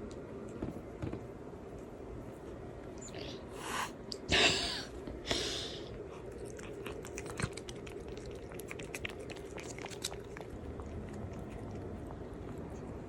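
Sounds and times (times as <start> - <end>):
cat chewing crunchily: 6.0 - 13.0.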